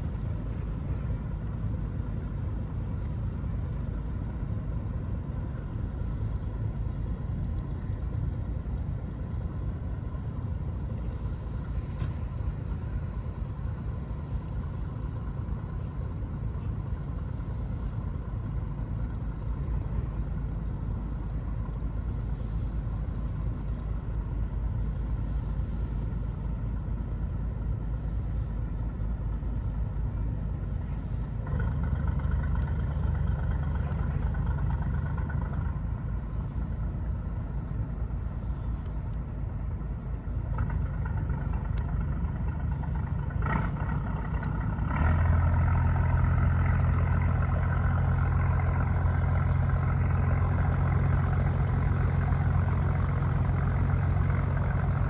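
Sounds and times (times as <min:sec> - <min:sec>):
faint steady hum: 0:00.0 - 0:55.0
low engine rumble: 0:00.0 - 0:55.0.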